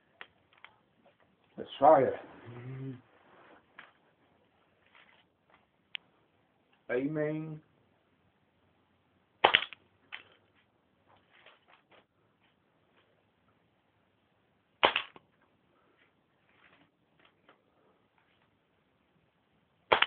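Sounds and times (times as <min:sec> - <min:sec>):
toy gun firing snap: 0:09.4 - 0:09.8.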